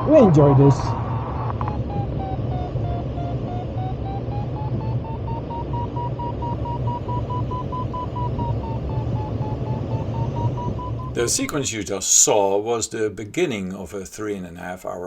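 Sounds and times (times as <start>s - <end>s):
rush of airflow: 0.0s - 11.7s
variometer beeping: 0.0s - 11.8s.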